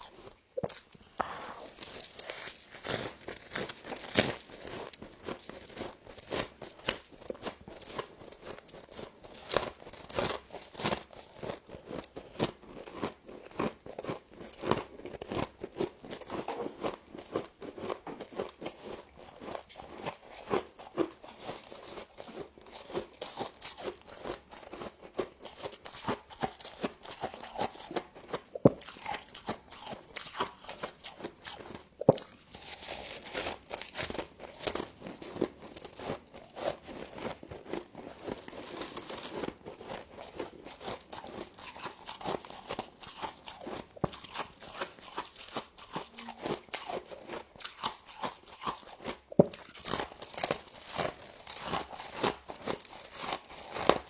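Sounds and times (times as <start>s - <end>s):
crunching frost: 1.2s - 7.1s.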